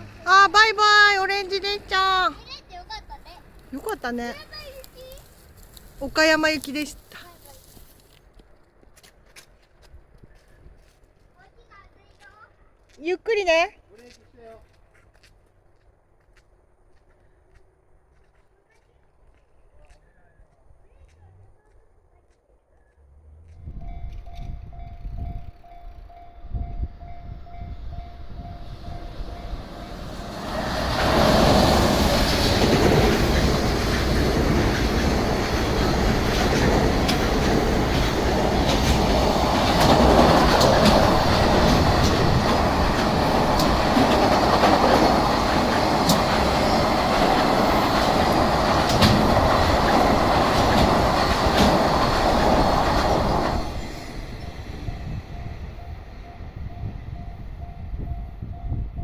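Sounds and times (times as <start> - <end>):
train rumbling past: 0.0 - 8.7, 22.8 - 59.0
wheels clacking over rail joints: 28.6 - 56.2.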